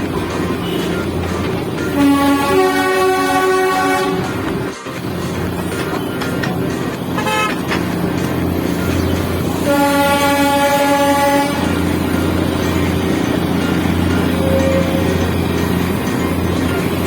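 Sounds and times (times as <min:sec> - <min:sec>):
vehicle horn: 0:00.6 - 0:01.0, 0:01.8 - 0:04.5, 0:07.1 - 0:07.8, 0:09.6 - 0:11.9.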